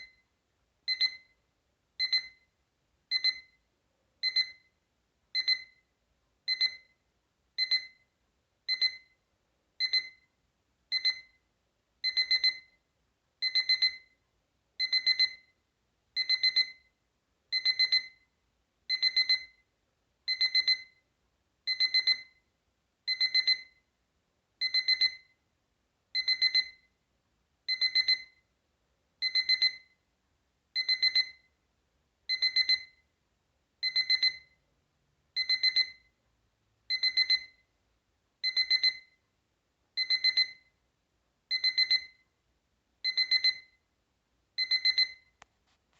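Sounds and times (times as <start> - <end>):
alarm clock beeping: 0.0 - 0.3, 0.9 - 1.4, 2.0 - 2.5, 3.1 - 3.6, 4.2 - 4.7, 5.4 - 5.8, 6.5 - 7.0, 7.6 - 8.1, 8.7 - 9.2, 9.8 - 10.3, 10.9 - 11.4, 12.0 - 12.8, 13.4 - 14.2, 14.8 - 15.6, 16.2 - 18.3, 18.9 - 19.7, 20.3 - 21.1, 21.7 - 22.4, 23.1 - 23.9, 24.6 - 25.4, 26.2 - 27.0, 27.7 - 28.4, 29.2 - 30.0, 30.8 - 31.6, 32.3 - 33.1, 33.8 - 34.6, 35.3 - 36.2, 36.9 - 37.7, 38.4 - 39.2, 40.0 - 40.8, 41.5 - 42.2, 43.0 - 43.8, 44.6 - 45.4.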